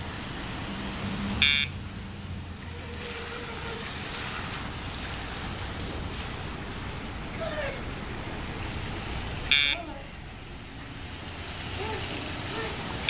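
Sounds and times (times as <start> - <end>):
short high-pitched beep: 9.5 - 9.8.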